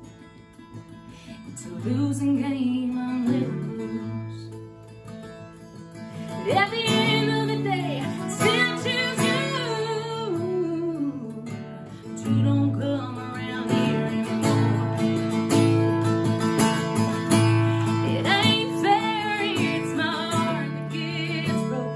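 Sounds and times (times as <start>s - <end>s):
acoustic guitar: 0.0s - 21.9s
woman singing: 1.1s - 4.8s, 6.1s - 15.3s, 17.3s - 21.9s.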